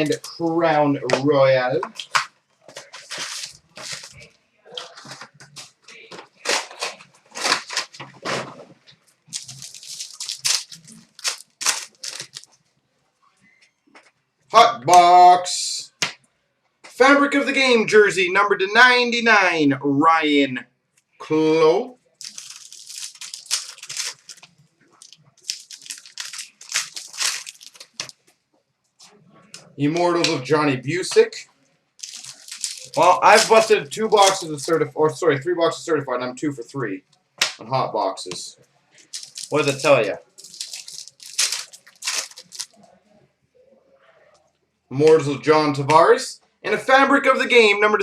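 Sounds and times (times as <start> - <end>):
cards being handled: 1.1 - 4.2, 4.8 - 8.7, 9.4 - 12.5, 22.2 - 28.2, 32.0 - 34.9, 39.0 - 42.8
plastic wrap tearing and crinkling: 1.9 - 4.2, 4.8 - 8.6, 9.2 - 12.6, 22.2 - 28.2, 32.0 - 34.9, 39.0 - 42.8.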